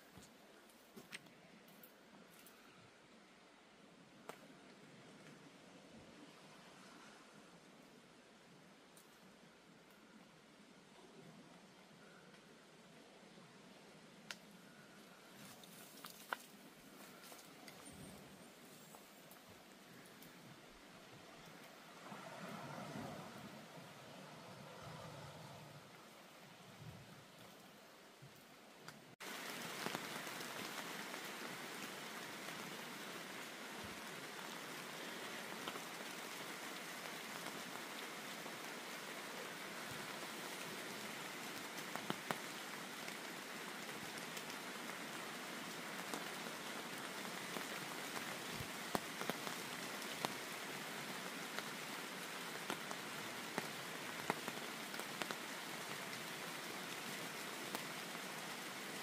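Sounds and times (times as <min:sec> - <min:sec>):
steady rain falling: 0:00.0 - 0:59.0
raindrop hits: 0:29.2 - 0:44.7, 0:45.9 - 0:56.4.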